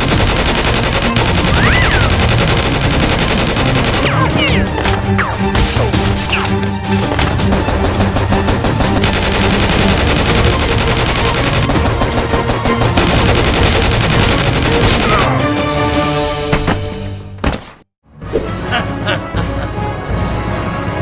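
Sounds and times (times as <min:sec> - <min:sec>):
rapid machine-gun fire: 0:00.0 - 0:04.2, 0:07.3 - 0:15.3
background music: 0:00.0 - 0:17.4, 0:18.0 - 0:21.0.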